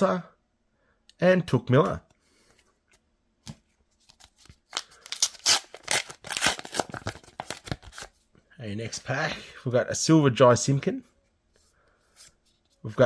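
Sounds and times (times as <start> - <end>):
wrapper tearing and crinkling: 4.6 - 8.1.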